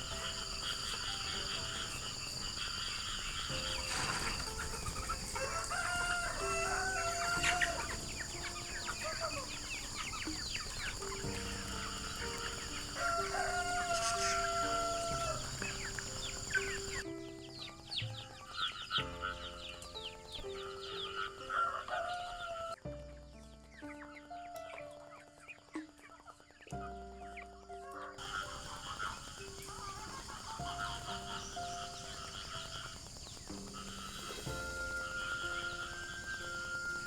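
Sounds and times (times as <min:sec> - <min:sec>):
rooster crowing: 0:00.0 - 0:17.0, 0:21.2 - 0:22.8, 0:28.2 - 0:37.0
soft background music: 0:00.0 - 0:37.0.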